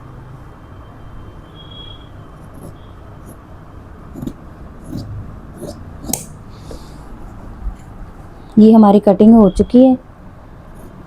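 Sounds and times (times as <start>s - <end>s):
steady low hum: 0.0s - 11.0s
scissors snipping fabric: 4.1s - 6.4s.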